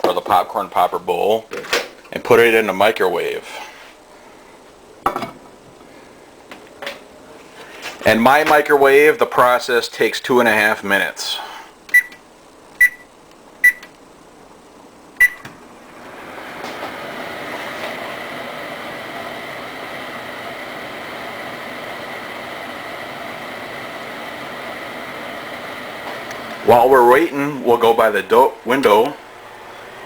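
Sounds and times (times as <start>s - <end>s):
microwave oven humming: 8.7s - 30.0s
microwave keypad beeping: 11.9s - 12.2s, 12.8s - 13.9s, 15.2s - 15.5s.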